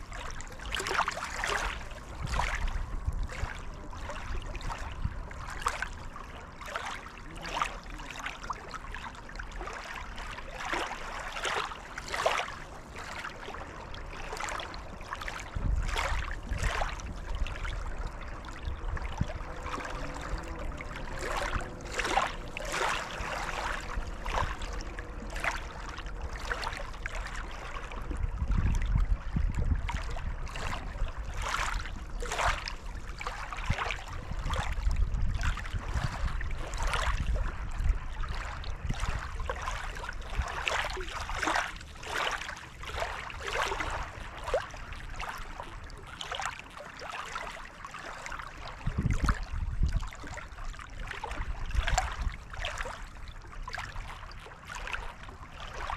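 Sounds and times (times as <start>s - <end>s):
waves lapping against shore: 0.0s - 55.9s
low rumble: 14.6s - 38.0s.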